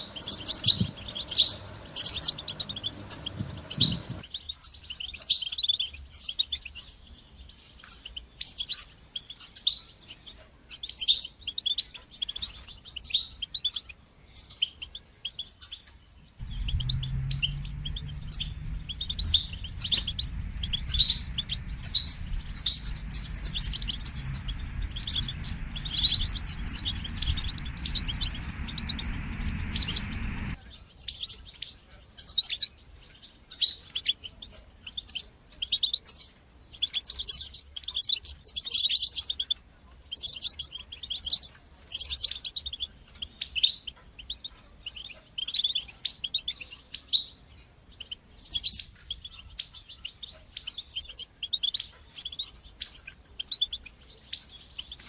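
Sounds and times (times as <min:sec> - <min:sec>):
bird twittering chirps: 0:00.0 - 0:55.0
low rumble: 0:00.2 - 0:04.2, 0:16.4 - 0:30.7.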